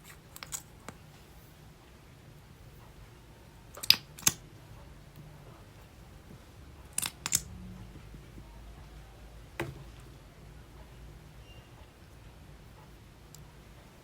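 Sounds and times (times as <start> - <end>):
low steady background: 0.0 - 14.0.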